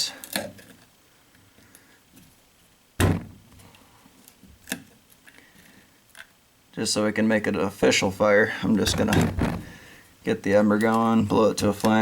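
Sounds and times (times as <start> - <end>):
hard object thunking down: 3.0 - 3.4, 8.8 - 9.8.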